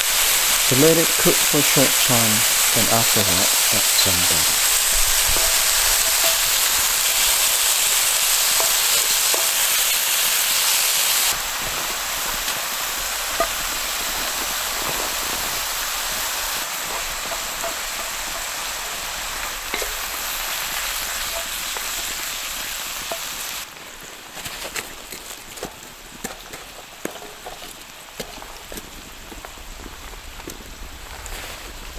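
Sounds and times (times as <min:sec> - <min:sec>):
mushrooms sizzling in a pan: 0:00.0 - 0:23.7
small pops in frying: 0:04.0 - 0:23.7, 0:24.4 - 0:29.0.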